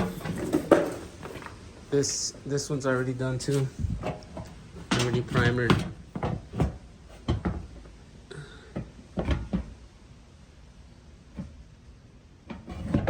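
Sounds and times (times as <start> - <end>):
short knocks and clatters: 0.0 - 1.6.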